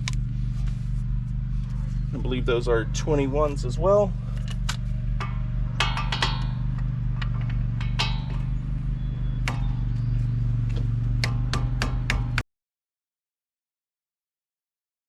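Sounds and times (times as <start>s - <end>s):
low machine hum: 0.0s - 12.4s
metal tools clinking: 5.2s - 8.6s.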